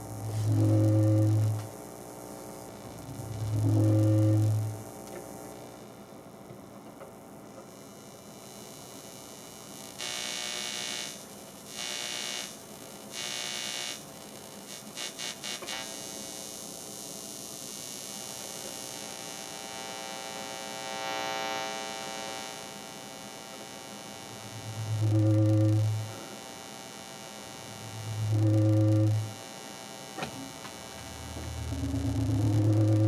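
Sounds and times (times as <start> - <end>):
electronic buzz and hum: 0.0 - 33.0
stutter of short pulses: 30.3 - 33.0.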